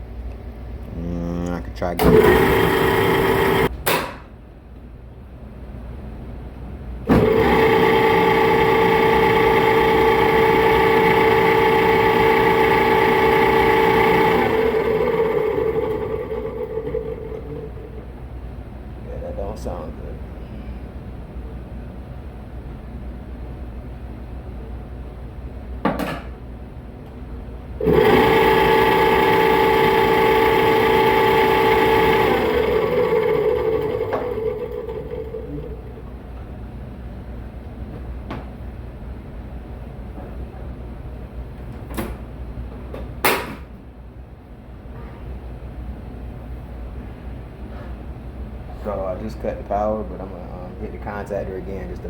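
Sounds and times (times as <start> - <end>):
man talking: 0.9 - 2.2, 19.1 - 20.3, 48.8 - 52.0
air blower whining: 1.9 - 3.7, 7.1 - 18.2, 27.8 - 36.5.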